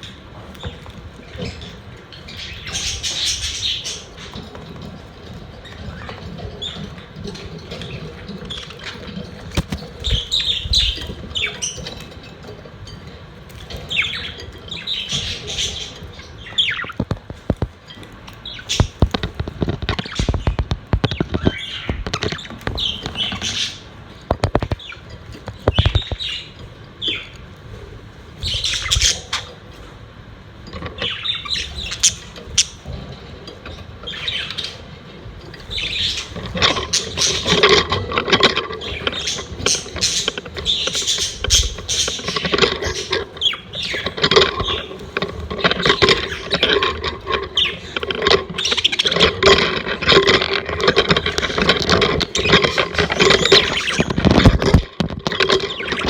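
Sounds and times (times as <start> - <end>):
budgerigars chirping and squawking: 0.0 - 56.0
sharp clicks and knocks: 4.2 - 26.7, 35.4 - 56.0.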